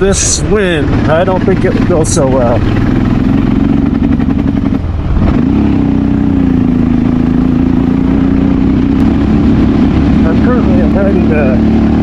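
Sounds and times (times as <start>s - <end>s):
motorcycle engine running: 0.0s - 12.0s
wind noise on microphone: 8.5s - 10.4s.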